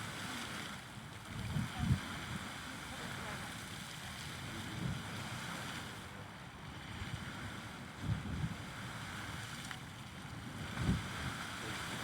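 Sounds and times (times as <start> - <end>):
wind buffeting microphone: 10.6 - 12.0.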